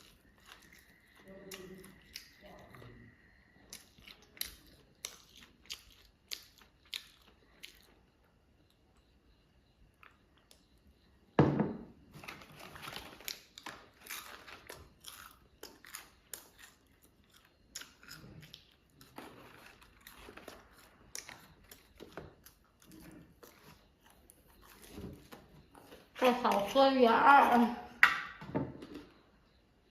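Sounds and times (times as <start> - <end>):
crunching fried chicken: 0.0 - 8.7, 12.0 - 26.8.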